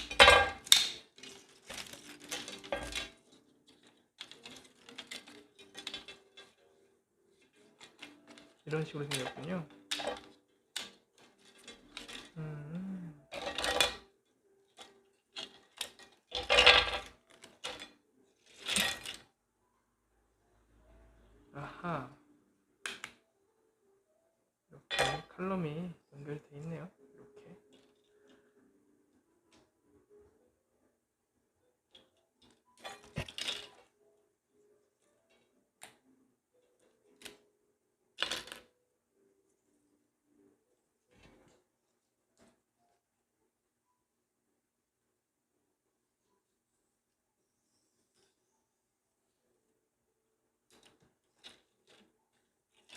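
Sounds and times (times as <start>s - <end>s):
plastic parts clicking and rattling: 0.0s - 12.5s, 13.2s - 19.3s, 22.8s - 23.2s, 24.8s - 25.4s, 27.4s - 28.7s, 31.9s - 34.0s, 35.0s - 37.5s, 38.1s - 38.8s, 50.6s - 52.9s.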